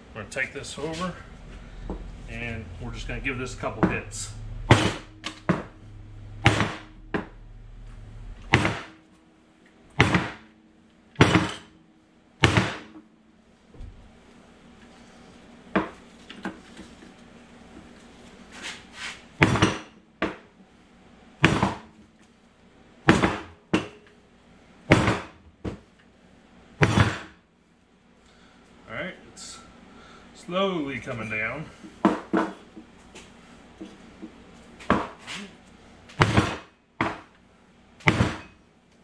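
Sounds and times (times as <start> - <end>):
hammer blows with metallic ring: 0.8 - 12.9.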